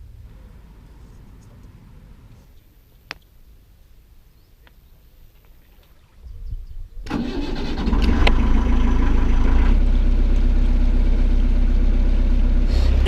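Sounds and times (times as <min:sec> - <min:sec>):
boat engine starting and idling: 0:07.0 - 0:13.0.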